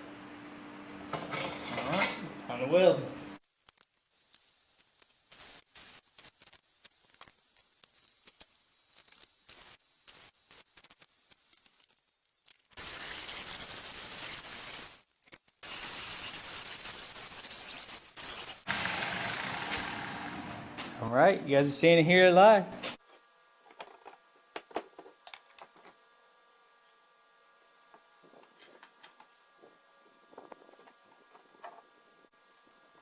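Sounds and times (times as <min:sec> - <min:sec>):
arc welding hiss: 0:03.6 - 0:11.9, 0:12.7 - 0:19.7.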